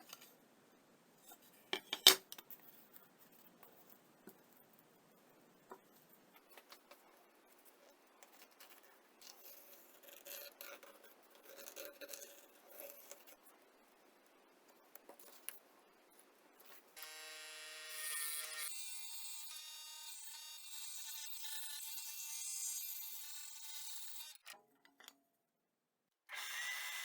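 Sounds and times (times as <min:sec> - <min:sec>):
scraping and handling noises: 0:01.2 - 0:04.9
small electric motor whining: 0:17.0 - 0:24.4, 0:26.3 - 0:27.0.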